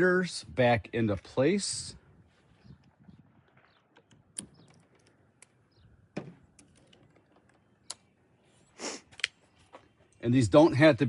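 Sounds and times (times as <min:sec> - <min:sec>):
bolts and tool clicking: 0:03.9 - 0:05.6, 0:06.5 - 0:08.1.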